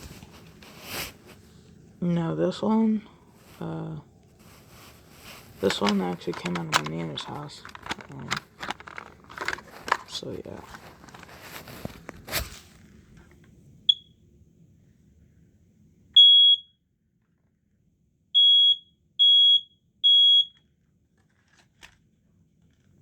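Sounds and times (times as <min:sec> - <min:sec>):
handling clicks: 0:05.2 - 0:12.2
smoke alarm beeping: 0:13.9 - 0:14.2, 0:16.2 - 0:16.8, 0:18.4 - 0:20.6.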